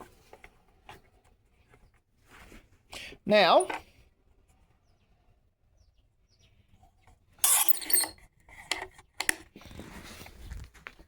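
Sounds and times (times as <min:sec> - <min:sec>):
rustling scrape: 0:02.2 - 0:02.8, 0:09.6 - 0:11.0
sharp clicks and clinks: 0:07.4 - 0:09.5.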